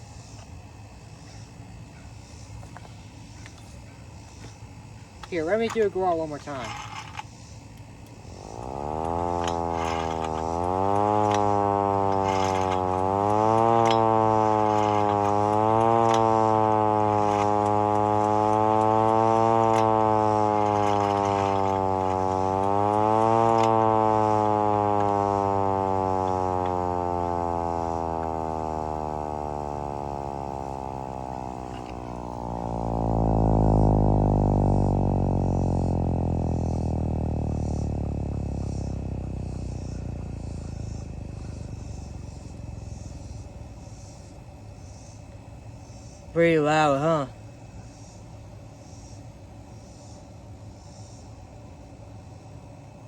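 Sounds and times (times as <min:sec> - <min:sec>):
low hum: 0:07.8 - 0:44.6
hand-crank siren wailing: 0:08.4 - 0:42.6.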